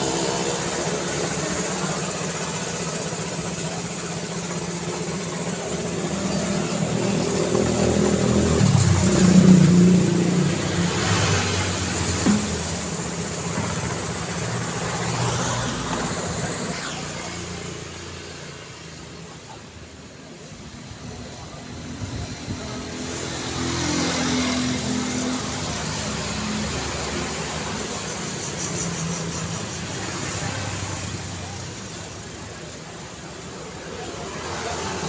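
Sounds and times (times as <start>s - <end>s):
cars driving past: 4.9s - 19.6s, 20.3s - 35.0s.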